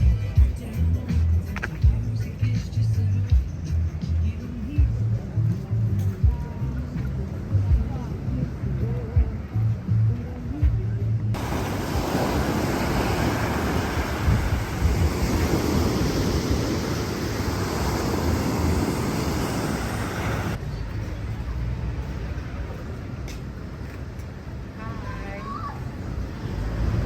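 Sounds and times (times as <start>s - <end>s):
sea surf washing onto beach: 11.4s - 20.6s.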